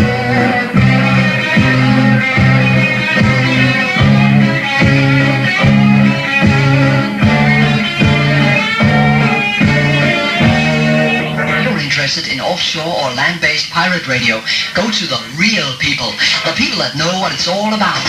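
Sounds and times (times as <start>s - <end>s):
rock music with guitars: 0.0s - 14.8s.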